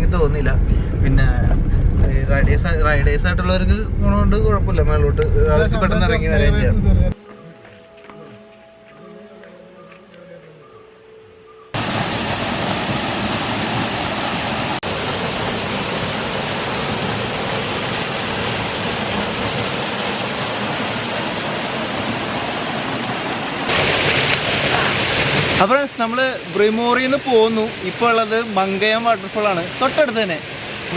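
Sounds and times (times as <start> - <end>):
waterfall rushing: 11.8 - 30.9.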